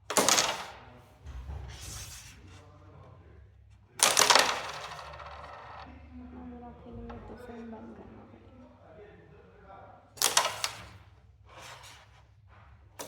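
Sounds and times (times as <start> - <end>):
carrom striker clacking coins: 0.1 - 0.8, 4.0 - 5.9, 10.2 - 11.0.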